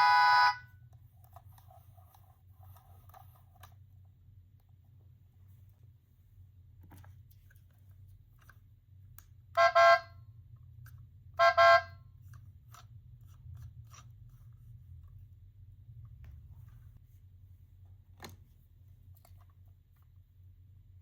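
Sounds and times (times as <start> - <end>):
toy speaker car horn beeps: 0.0 - 0.8, 9.5 - 10.2, 11.3 - 12.1.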